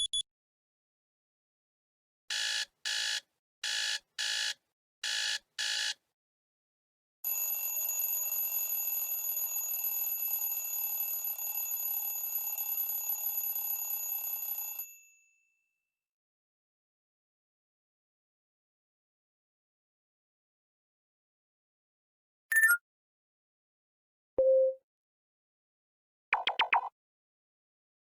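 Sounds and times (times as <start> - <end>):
short high alarm beeps: 0.0 - 0.2
continuous ringing alarm: 7.3 - 15.0.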